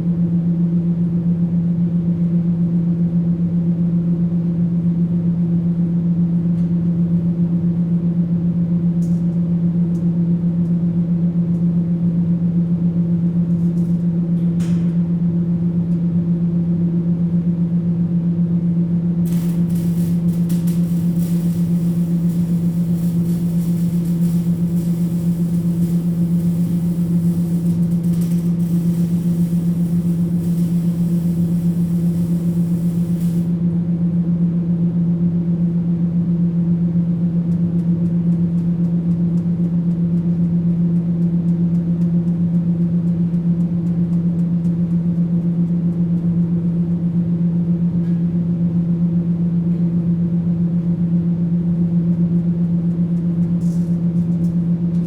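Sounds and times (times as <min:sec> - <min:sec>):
welding machine humming: 0:19.2 - 0:33.6.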